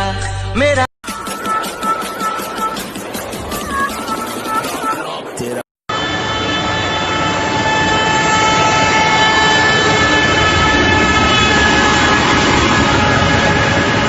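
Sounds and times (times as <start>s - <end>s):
steady whistling tones: 1.1s - 5.6s
vehicle rushing roar: 5.9s - 14.0s.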